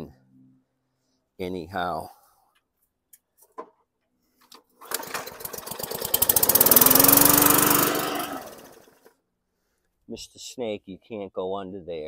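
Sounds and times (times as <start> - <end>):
lawn mower engine pull-started: 4.8 - 9.1.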